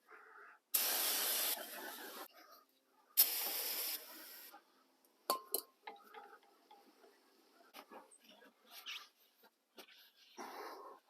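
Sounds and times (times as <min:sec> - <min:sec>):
aerosol spray hissing: 0:00.8 - 0:02.2, 0:03.2 - 0:04.6.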